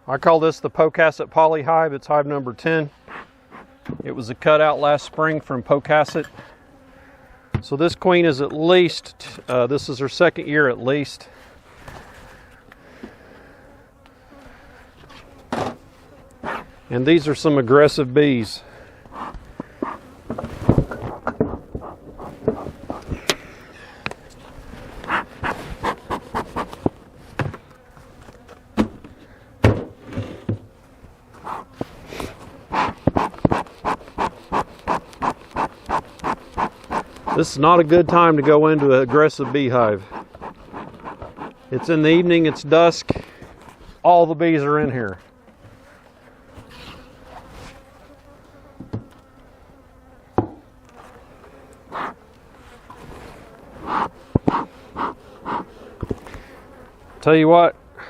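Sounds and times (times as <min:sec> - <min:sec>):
honey bees buzzing: 0:02.0 - 0:58.0
bellows puffing: 0:03.0 - 0:03.8, 0:11.3 - 0:16.8, 0:18.6 - 0:27.8, 0:31.4 - 0:44.0, 0:51.1 - 0:57.0.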